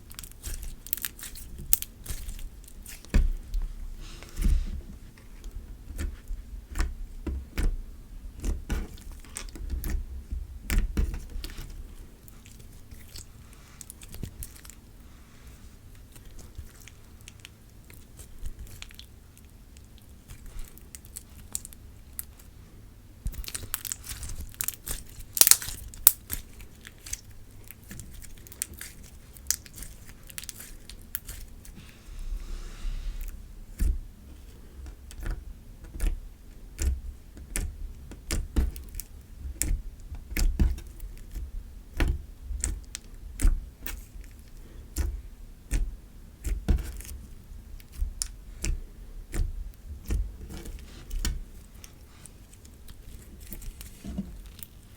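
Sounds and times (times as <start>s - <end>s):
slime squelching: 0.1s - 7.6s, 23.3s - 34.5s, 35.1s - 54.9s
slime clicking and popping: 23.3s - 26.4s.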